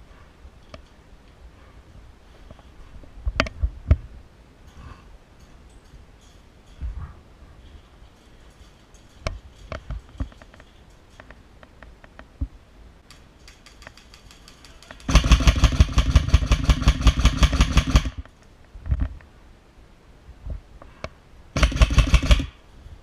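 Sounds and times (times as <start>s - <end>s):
airsoft gun full-auto burst: 15.0s - 18.2s, 21.6s - 22.6s.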